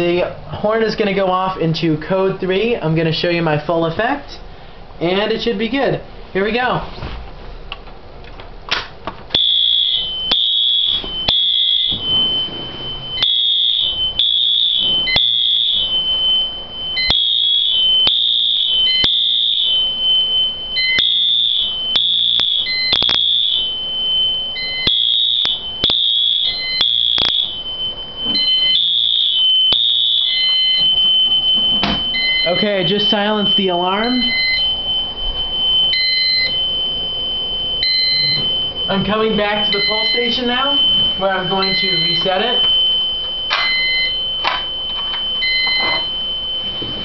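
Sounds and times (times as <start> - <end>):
fire alarm horn pulses: 9.3 - 47.0
steady high tone: 9.3 - 47.0.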